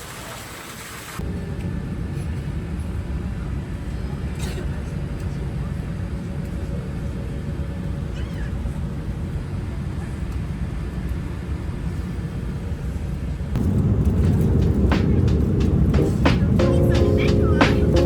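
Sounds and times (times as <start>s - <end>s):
vehicle engine rumbling: 12.7s - 18.0s.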